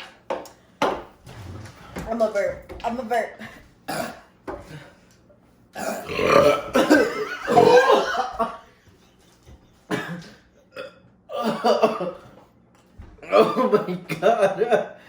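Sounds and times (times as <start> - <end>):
person burping loudly: 5.8 - 8.3.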